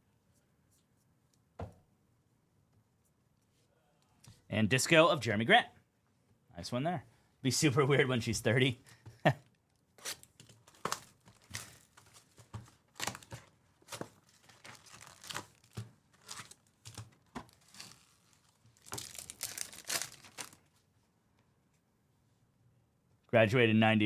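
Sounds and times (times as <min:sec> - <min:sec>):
card packs being ripped open: 0:10.0 - 0:20.6
cards being handled: 0:10.0 - 0:20.6.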